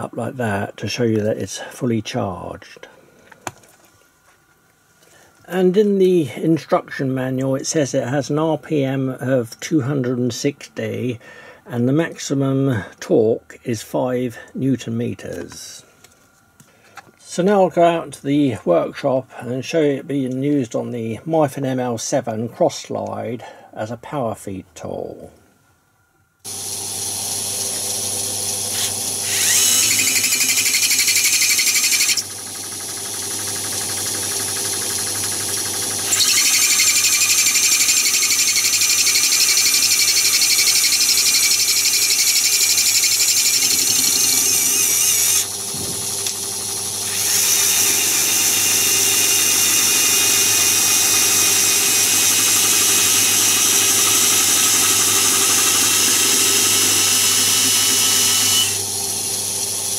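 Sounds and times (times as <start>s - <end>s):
cordless screwdriver whining: 26.5s - 59.8s
lathe humming: 26.5s - 59.9s.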